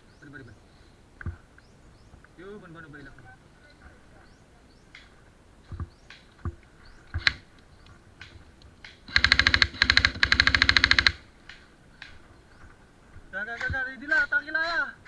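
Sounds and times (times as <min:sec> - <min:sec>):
airsoft gun firing full auto: 0:09.1 - 0:11.2.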